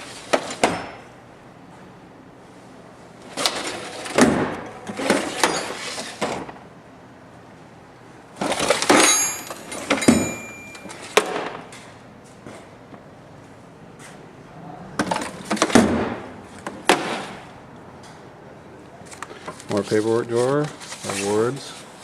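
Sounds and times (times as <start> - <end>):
tool chest drawers sliding: 3.3 - 6.6
ringing metal: 4.0 - 6.2, 8.9 - 11.1
tools rattling and clinking: 4.9 - 6.4, 8.4 - 11.9.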